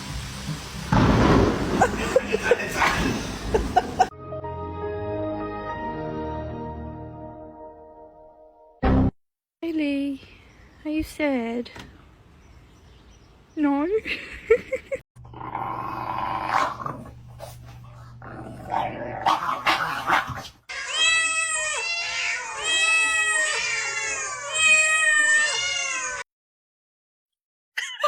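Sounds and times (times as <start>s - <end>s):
cat yowling: 20.7s - 26.2s.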